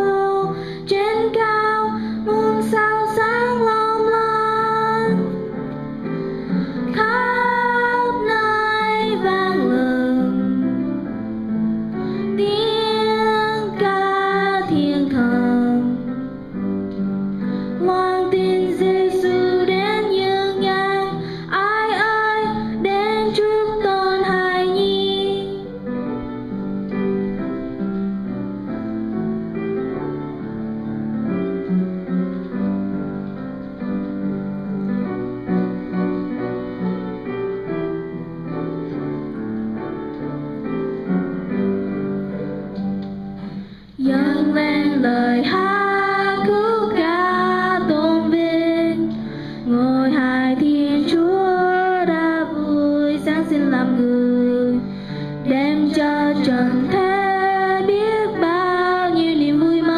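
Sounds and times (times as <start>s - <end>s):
person singing: 0.0s - 5.5s, 6.8s - 11.0s, 12.2s - 16.2s, 17.8s - 25.9s, 44.0s - 59.9s
piano-like keyboard notes: 0.0s - 59.9s.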